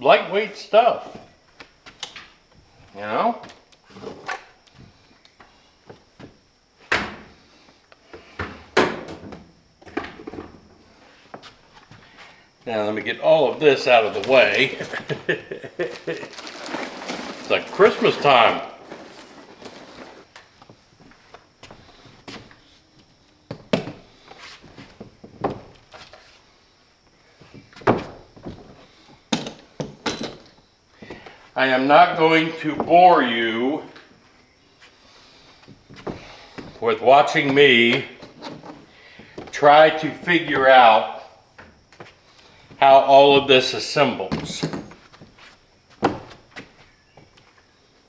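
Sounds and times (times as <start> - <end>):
knocks and thumps of handled objects: 29.3 - 30.6, 44.3 - 45.2
heavy objects knocking and clunking: 44.3 - 45.1.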